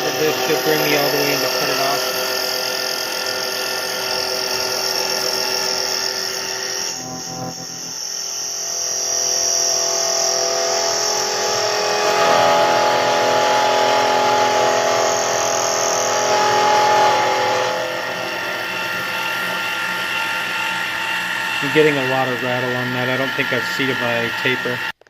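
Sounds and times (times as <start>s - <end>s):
lathe tool chattering on metal: 0.0s - 6.5s.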